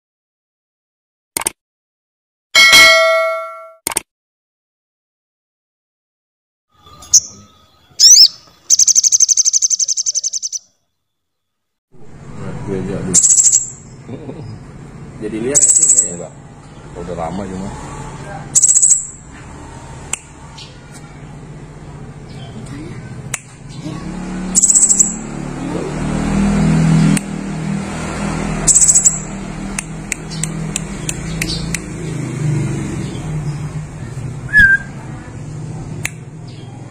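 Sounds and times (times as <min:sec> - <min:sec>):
songbird calling and trilling: 0:06.8 - 0:10.8, 0:13.1 - 0:14.7, 0:15.6 - 0:16.8, 0:18.6 - 0:19.2, 0:23.7 - 0:25.2, 0:28.7 - 0:31.9
sharp ticks: 0:08.7 - 0:10.6, 0:28.7 - 0:31.9
vehicle engine running: 0:12.0 - 0:36.9.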